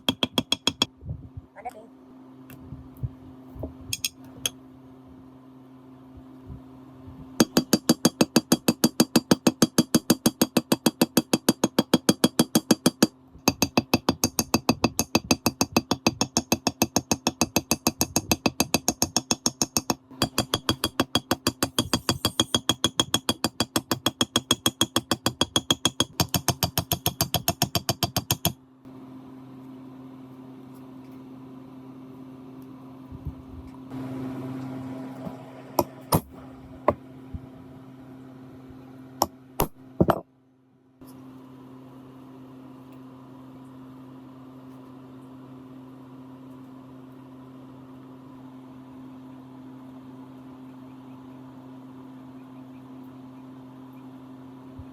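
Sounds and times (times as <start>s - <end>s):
steady low hum: 0.0s - 54.9s.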